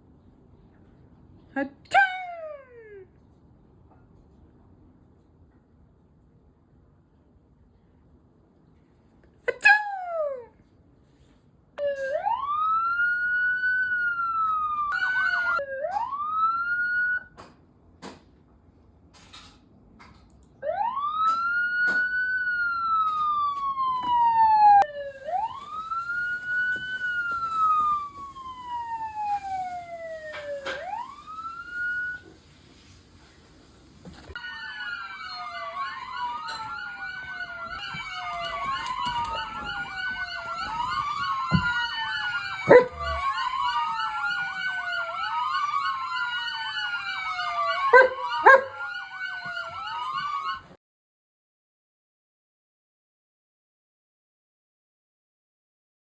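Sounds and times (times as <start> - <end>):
police siren wailing: 11.8 - 17.5, 20.6 - 33.3, 34.2 - 50.8.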